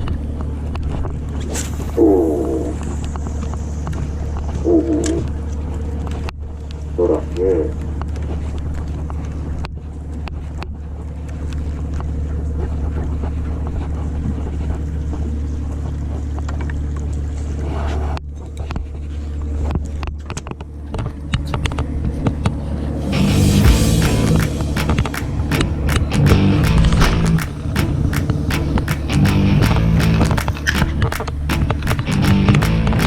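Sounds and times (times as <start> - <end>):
boat engine humming: 0.0 - 33.0
wind: 0.0 - 33.0
water noise: 21.8 - 33.0.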